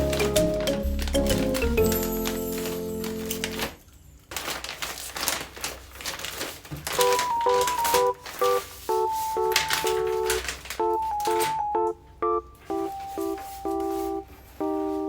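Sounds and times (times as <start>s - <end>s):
electronic note melody: 7.0s - 15.0s.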